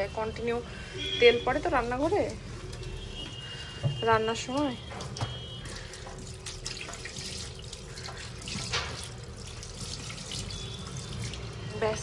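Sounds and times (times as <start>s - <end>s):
water splashes: 1.9s - 12.0s
tap water running into sink: 3.8s - 11.6s.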